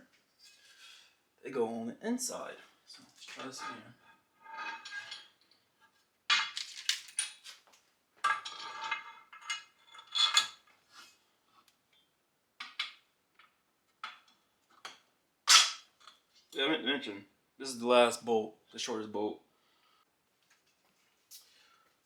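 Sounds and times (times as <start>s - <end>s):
steel parts clinking and rattling: 3.1s - 5.6s, 6.3s - 7.5s, 8.2s - 10.6s.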